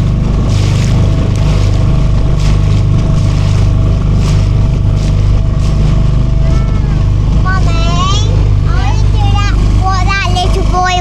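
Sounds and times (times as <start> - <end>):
motorboat engine droning: 0.0 - 11.0.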